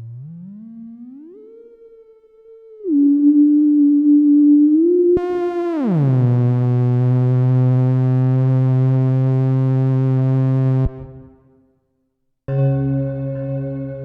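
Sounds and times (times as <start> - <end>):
electronic theremin tone: 0.0 - 7.9.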